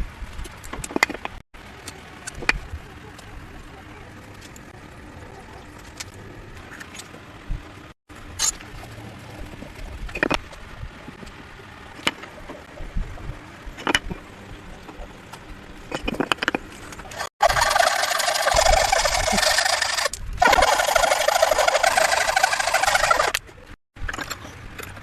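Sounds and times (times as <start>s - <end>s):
wooden tools tapping and clicking: 0.4s - 3.3s, 14.9s - 25.0s.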